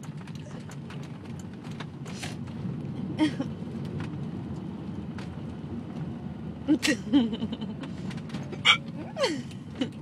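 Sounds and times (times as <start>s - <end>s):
steady low rumble: 0.0s - 10.0s
person hiccuping: 8.6s - 8.8s.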